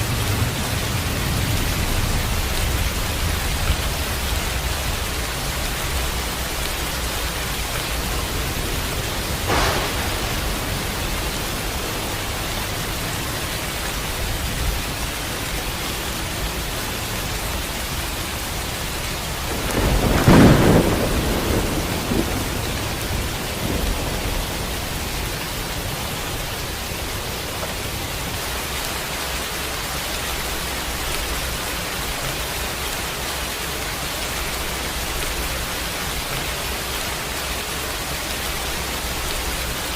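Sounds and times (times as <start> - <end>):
thunder crack and rumble: 0.0 - 33.0
steady rain: 0.0 - 39.9.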